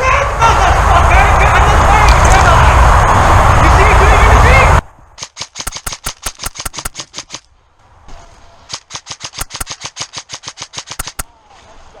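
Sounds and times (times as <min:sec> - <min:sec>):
airsoft gun full auto bursts: 0:05.2 - 0:07.5, 0:08.7 - 0:11.2.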